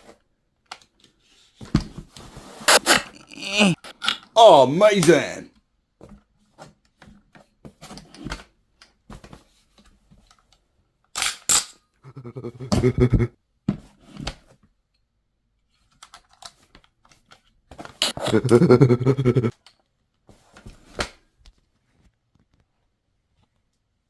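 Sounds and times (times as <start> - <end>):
short low voice: 4.4 - 5.5, 12.1 - 13.3.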